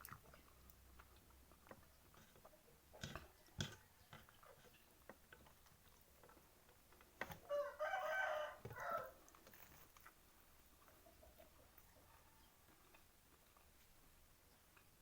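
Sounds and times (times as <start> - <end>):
rooster crowing: 7.4 - 9.2.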